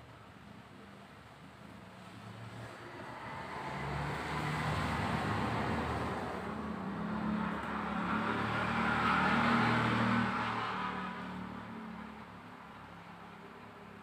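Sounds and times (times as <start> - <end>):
vehicle passing by: 2.5 - 12.3.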